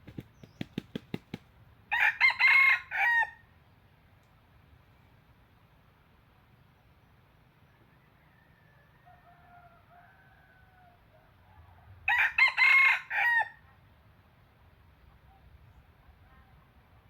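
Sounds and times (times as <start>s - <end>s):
rooster crowing: 1.9s - 3.4s, 7.7s - 13.6s.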